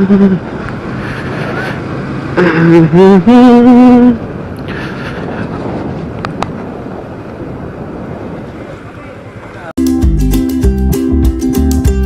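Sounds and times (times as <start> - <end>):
wind and road noise: 0.0 - 12.0
man singing: 2.4 - 4.2.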